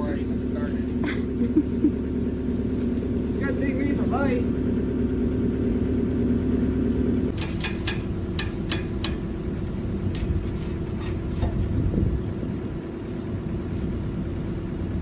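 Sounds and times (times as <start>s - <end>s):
skidloader engine running: 0.0s - 15.0s
sharp clicks and clanks: 7.3s - 12.4s.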